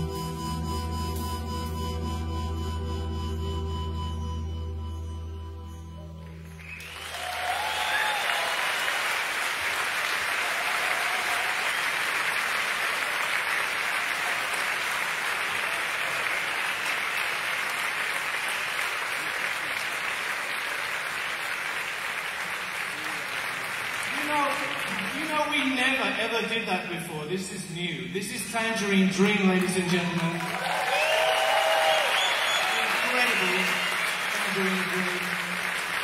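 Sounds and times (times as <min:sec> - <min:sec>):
low music drone: 0:00.0 - 0:06.8
audience applauding: 0:06.5 - 0:25.8, 0:29.2 - 0:36.0.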